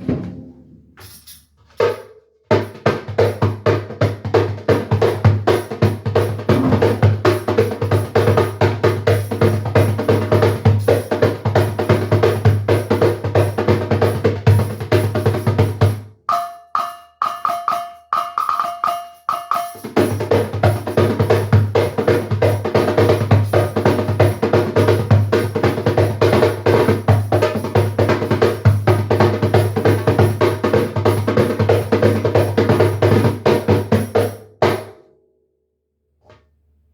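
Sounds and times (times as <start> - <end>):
drum kit played hard: 5.2 - 8.7.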